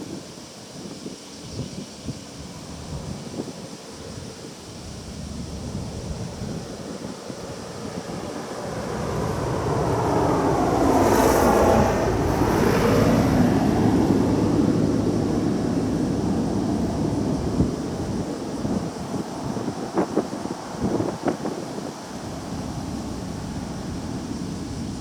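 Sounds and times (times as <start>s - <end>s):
wind buffeting microphone: 1.5s - 25.0s
passing engine: 5.1s - 19.9s, 20.5s - 25.0s.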